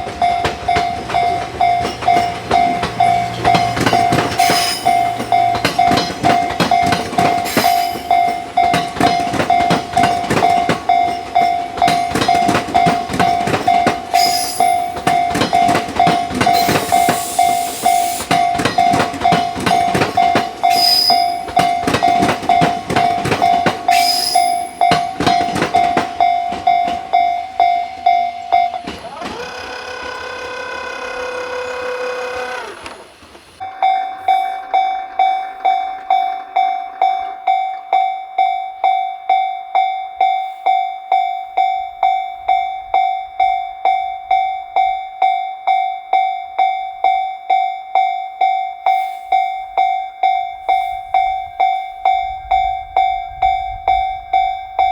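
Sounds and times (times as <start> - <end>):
train wheels clattering over rail joints: 0.0 - 38.1
level crossing warning bell ringing: 0.0 - 54.9
high-pitched wheel squeals: 0.3 - 8.5, 14.2 - 15.0, 16.5 - 19.1, 20.6 - 22.0, 23.6 - 25.3, 25.9 - 38.2.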